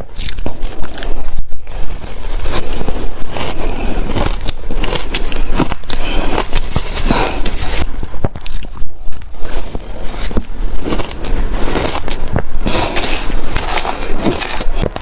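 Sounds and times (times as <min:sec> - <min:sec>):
crunching shaved ice: 0:00.0 - 0:08.7.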